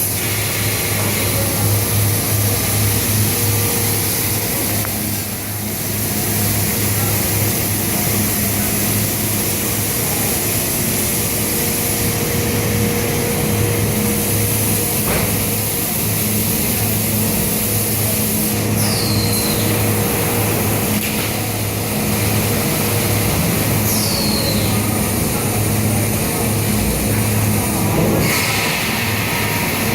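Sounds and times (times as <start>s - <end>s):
forming machine humming: 0.0s - 29.9s
short high squeals: 18.8s - 19.8s, 23.8s - 24.8s.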